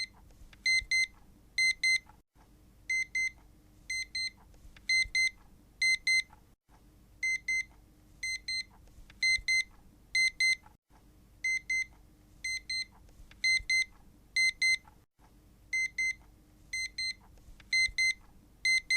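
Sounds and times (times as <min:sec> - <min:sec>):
electronic alarm beeping: 0:07.2 - 0:10.6, 0:16.8 - 0:18.9.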